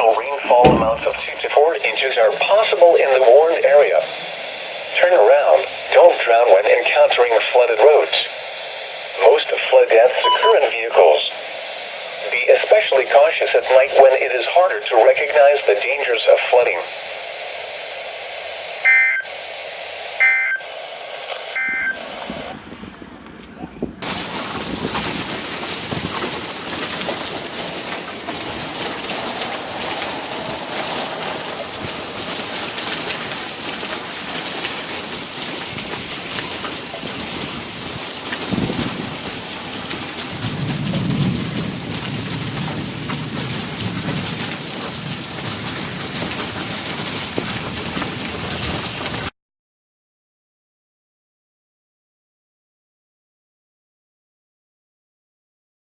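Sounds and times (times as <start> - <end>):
steady rain falling: 0.0 - 49.3
sharp thunderclap: 0.5 - 1.5, 21.7 - 35.9, 37.0 - 49.2
low rumble of thunder: 21.7 - 35.0, 37.0 - 48.9.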